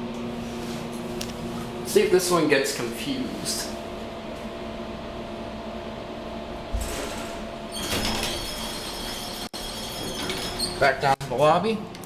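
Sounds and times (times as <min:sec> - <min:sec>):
elevator mechanical hum: 0:00.0 - 0:12.0
elevator door whirring: 0:06.6 - 0:11.2.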